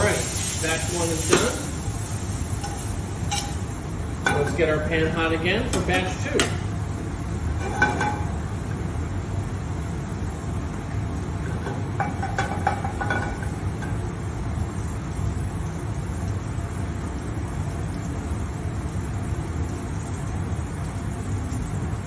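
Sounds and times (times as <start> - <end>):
stove burner rushing: 0.0 - 15.4
metallic clinks of pan: 2.6 - 3.6.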